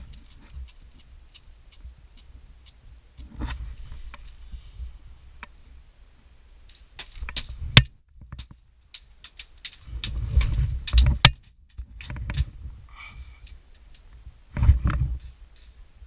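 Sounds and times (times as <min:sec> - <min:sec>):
gear clicks knocks and rattles: 0:06.7 - 0:12.6.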